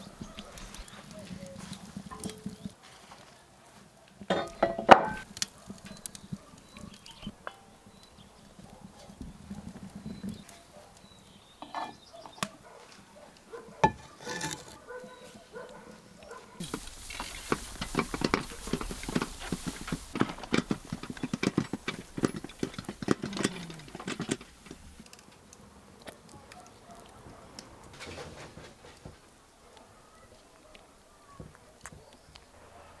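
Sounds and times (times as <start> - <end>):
horse hooves knocking: 0.0 - 2.8, 4.3 - 10.5, 16.6 - 25.1.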